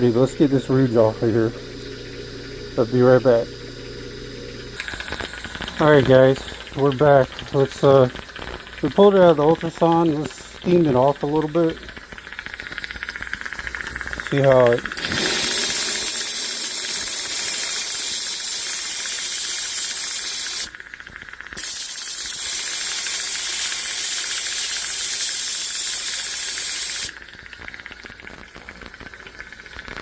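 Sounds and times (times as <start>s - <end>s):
steam jet hissing: 14.2s - 20.7s, 21.6s - 27.1s.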